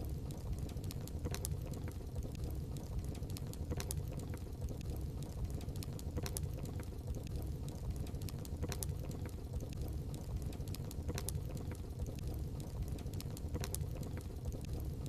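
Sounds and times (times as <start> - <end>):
fire low rumble: 0.0 - 15.0
wood fire crackling and popping: 0.0 - 15.0.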